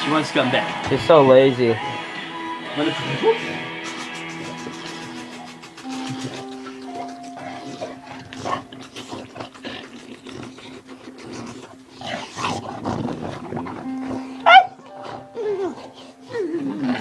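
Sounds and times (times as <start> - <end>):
dog making rough vocal sounds: 1.8 - 17.0.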